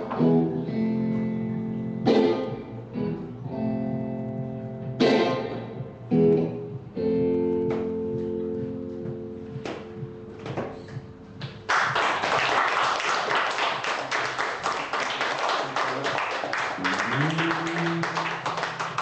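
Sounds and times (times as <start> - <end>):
audience applauding: 11.7 - 19.0
person speaking: 16.8 - 18.5.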